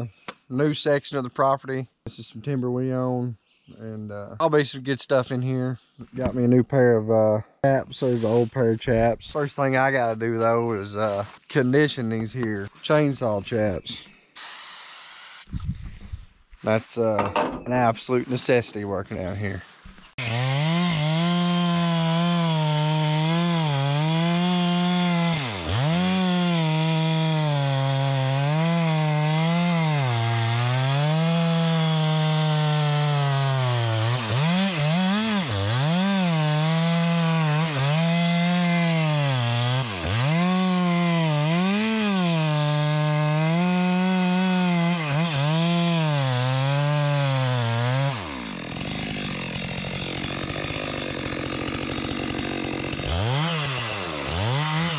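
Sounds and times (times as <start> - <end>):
chainsaw cutting wood: 14.4 - 16.0, 19.8 - 54.9.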